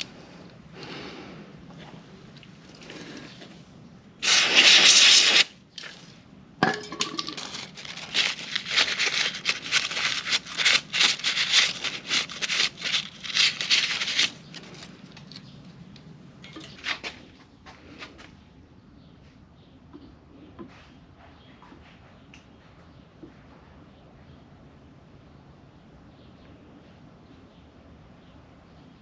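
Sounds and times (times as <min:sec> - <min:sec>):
loud hiss: 0:04.2 - 0:05.6.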